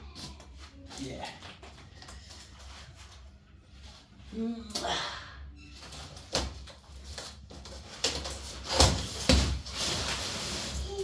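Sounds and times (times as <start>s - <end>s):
packaging rubbing and scraping: 7.7s - 11.0s.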